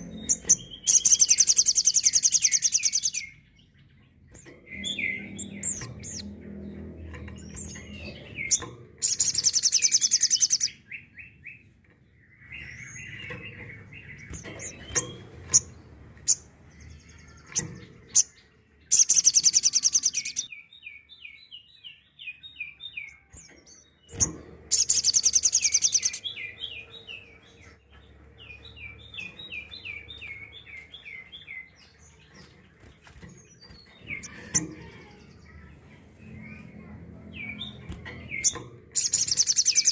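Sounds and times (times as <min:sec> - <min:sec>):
bird high-pitched trills: 0:00.0 - 0:03.5, 0:04.6 - 0:11.4, 0:12.4 - 0:20.7, 0:24.1 - 0:27.8, 0:36.3 - 0:39.9.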